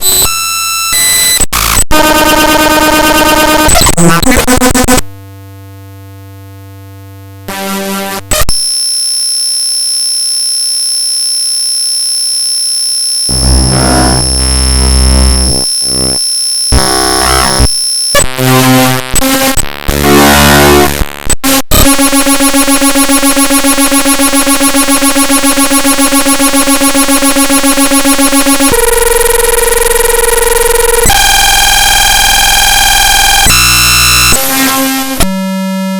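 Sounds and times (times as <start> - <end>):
harsh digital buzzes: 7.5 - 35.9
steady electronic tones: 8.6 - 21.0.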